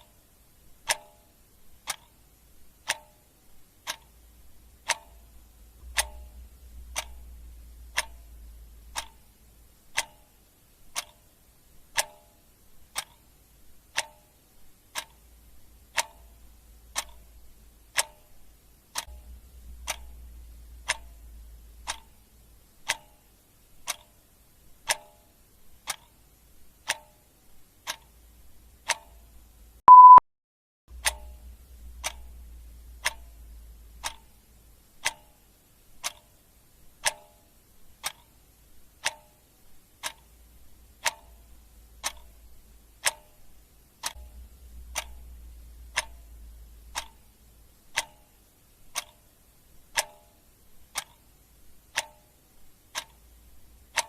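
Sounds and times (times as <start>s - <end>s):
clock ticking: 0.0s - 30.2s, 30.9s - 54.0s
short electronic beep: 29.9s - 30.2s.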